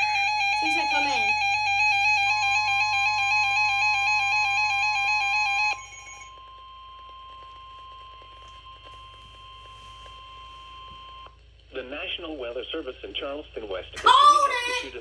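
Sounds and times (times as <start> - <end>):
two-pitch alarm: 0.0 - 6.9.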